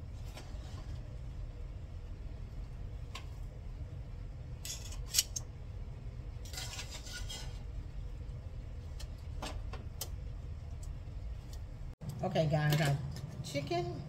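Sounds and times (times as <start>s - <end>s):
steady low hum: 0.0s - 14.0s
metal utensil scraping a pot: 6.4s - 7.7s.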